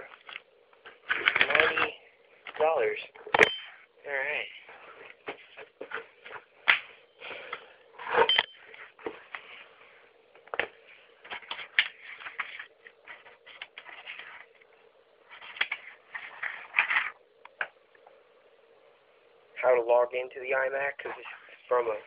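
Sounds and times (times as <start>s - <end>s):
paper rustling: 10.6s - 14.6s, 15.2s - 17.2s.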